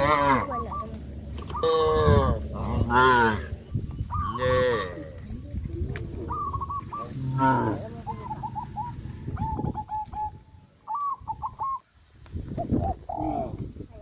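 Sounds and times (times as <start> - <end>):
cattle mooing: 0.0 - 0.7, 1.6 - 3.5, 4.2 - 5.1, 7.0 - 8.0
small birds chirping: 0.0 - 14.0.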